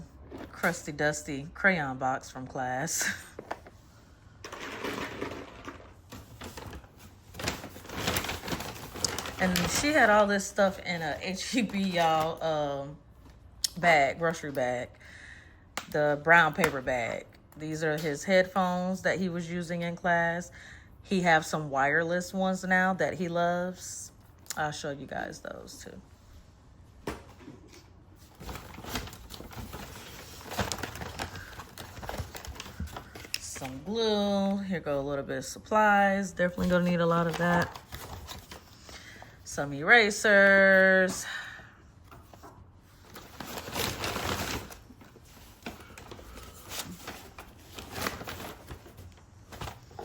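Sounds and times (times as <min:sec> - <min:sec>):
paper bag rustling: 0:04.5 - 0:11.1, 0:28.1 - 0:33.6, 0:36.6 - 0:38.8, 0:42.2 - 0:50.0.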